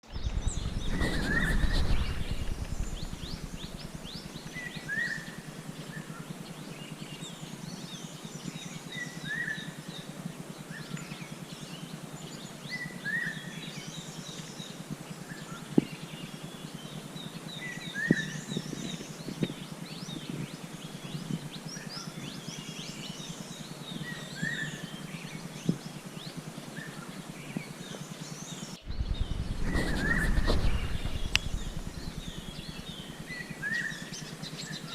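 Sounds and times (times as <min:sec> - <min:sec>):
low rumble: 0:00.0 - 0:04.8, 0:28.8 - 0:33.4
birds chirping and twittering: 0:00.0 - 0:34.9
sharp clicks: 0:28.9 - 0:33.0.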